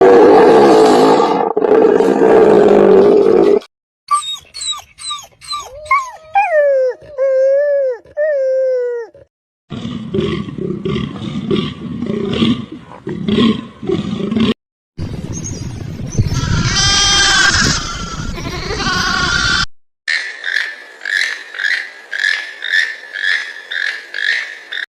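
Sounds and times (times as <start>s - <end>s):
roar-like animal call: 0.0s - 3.7s
noisy animal call: 16.3s - 19.7s.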